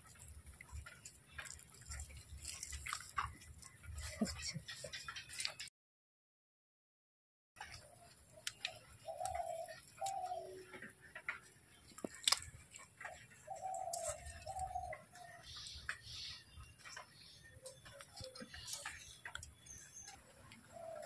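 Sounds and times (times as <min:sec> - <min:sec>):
dove cooing: 0:07.9 - 0:11.1, 0:13.0 - 0:15.8, 0:20.0 - 0:21.0.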